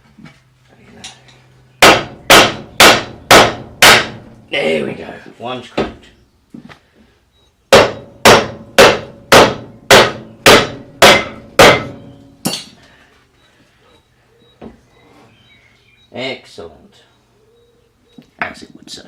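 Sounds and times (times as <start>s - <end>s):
hammer striking metal: 1.8s - 4.3s, 7.7s - 12.8s.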